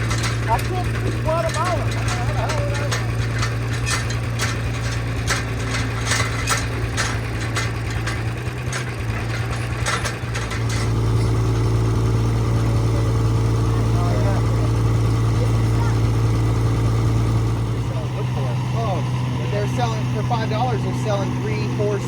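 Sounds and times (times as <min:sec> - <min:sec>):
knocks and clicks: 0:00.0 - 0:11.7
engine running: 0:00.0 - 0:22.0.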